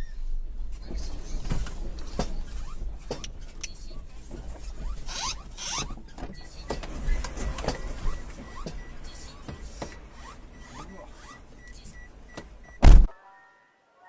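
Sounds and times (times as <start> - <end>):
scraping squeal: 4.4 - 12.1.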